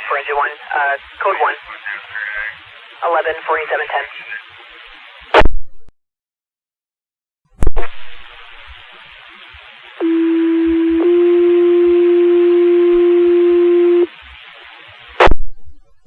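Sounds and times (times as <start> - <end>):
radio static hiss: 0.0 - 5.5, 7.6 - 15.5.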